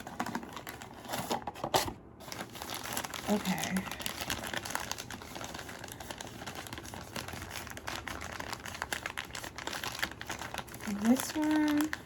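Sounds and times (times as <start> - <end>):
plastic bag crinkling: 0.0 - 1.4, 2.2 - 12.0.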